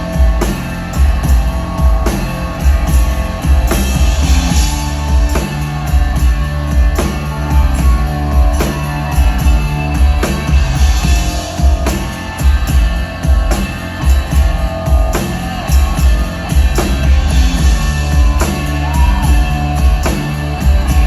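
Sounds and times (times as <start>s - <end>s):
guitars: 0.0s - 21.0s
heavy bass: 0.0s - 21.0s
steady drum beat: 0.0s - 21.0s.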